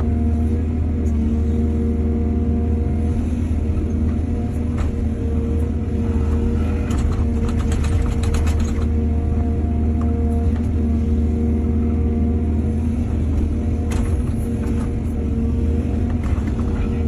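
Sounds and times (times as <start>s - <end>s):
diesel engine running: 0.0s - 17.0s
metal clanks and rattles: 6.8s - 9.0s.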